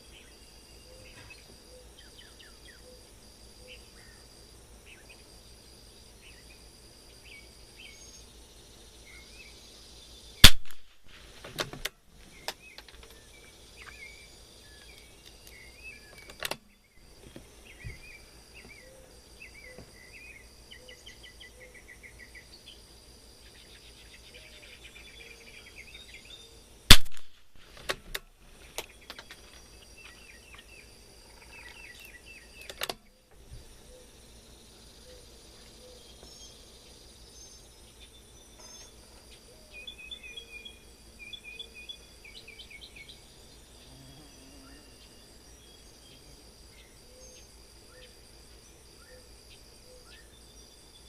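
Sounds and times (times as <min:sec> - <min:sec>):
birds chirping: 0:00.0 - 0:05.4, 0:06.0 - 0:27.1, 0:27.8 - 0:51.0
insects trilling: 0:00.0 - 0:51.0
rifle shots: 0:10.4 - 0:11.2, 0:26.9 - 0:27.7.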